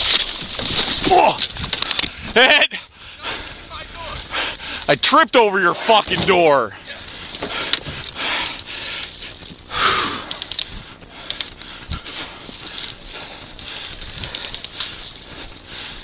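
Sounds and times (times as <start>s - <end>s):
rustling and clicks of gear: 0.0s - 2.6s, 3.2s - 5.0s, 5.8s - 16.0s
person breathing hard: 2.1s - 4.9s, 6.8s - 16.0s.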